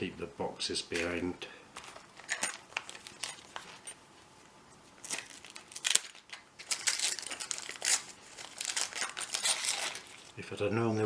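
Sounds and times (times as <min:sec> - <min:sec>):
paper packaging crinkling: 0:01.8 - 0:04.0, 0:04.7 - 0:10.4.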